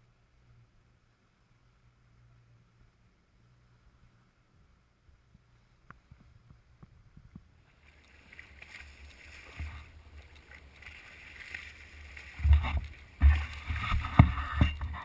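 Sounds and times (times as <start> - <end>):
rushing water and air: 0.4 - 15.0.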